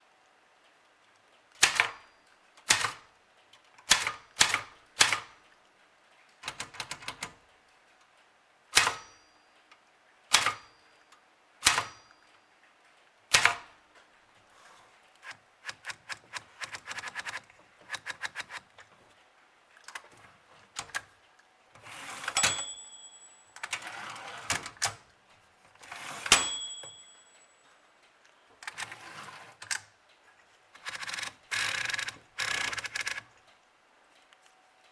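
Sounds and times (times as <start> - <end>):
typewriter keystrokes: 1.6 - 3.1, 3.8 - 5.5, 6.4 - 7.4, 8.7 - 9.2, 10.3 - 10.7, 11.6 - 12.1, 13.3 - 13.8, 15.2 - 18.9, 19.8 - 21.1, 21.8 - 25.1, 25.8 - 27.4, 30.8 - 33.3
typewriter bell ring: 8.8 - 9.4, 22.0 - 24.8, 25.8 - 27.8
typewriter carriage rasping: 15.2 - 18.6, 21.8 - 25.0, 25.8 - 27.4, 28.6 - 29.8, 30.8 - 33.2.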